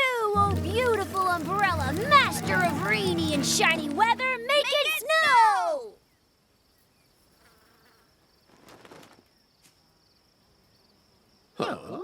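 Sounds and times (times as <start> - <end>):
high insect buzz: 6.6 - 8.5.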